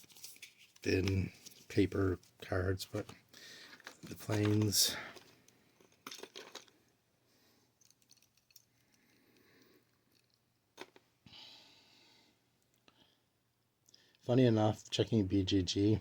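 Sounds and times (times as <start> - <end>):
plastic game pieces clicking: 5.8 - 6.7.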